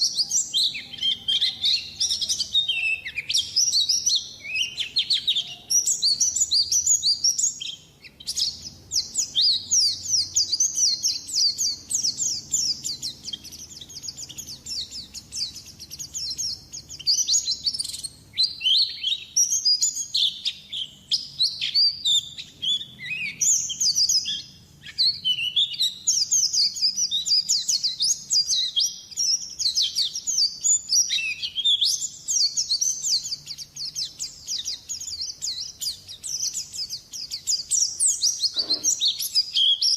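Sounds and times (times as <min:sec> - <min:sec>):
bird twittering song: 0:00.0 - 0:39.9.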